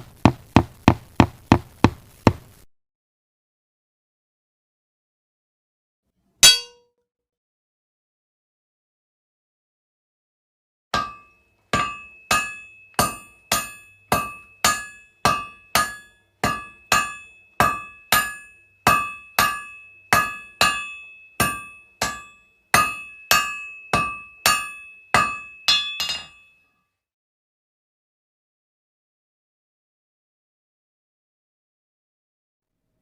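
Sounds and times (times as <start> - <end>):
hammer blows with metallic ring: 6.4 - 6.9, 11.0 - 26.7.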